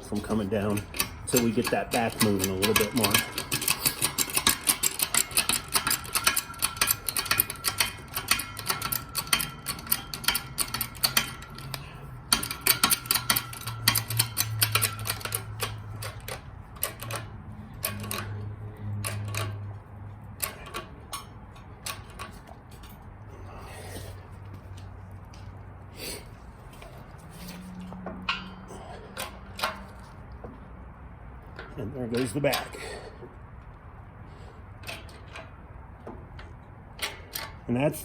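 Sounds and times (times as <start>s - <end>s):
rapid mechanical clicking: 0.2s - 18.4s.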